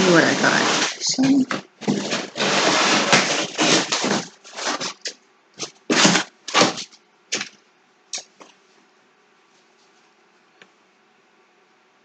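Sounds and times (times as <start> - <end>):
packaging rustling and crinkling: 0.0 - 7.6.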